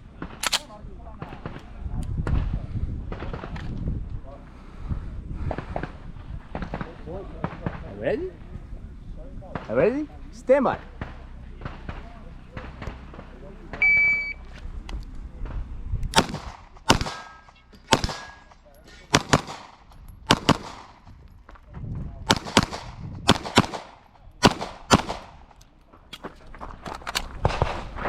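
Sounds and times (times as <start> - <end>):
pistol shots: 16.1 - 21.1, 22.3 - 25.5.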